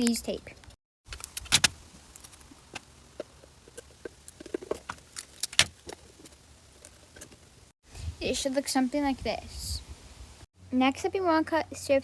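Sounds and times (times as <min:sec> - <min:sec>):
tape and plastic clicks and crinkles: 0:00.0 - 0:07.4.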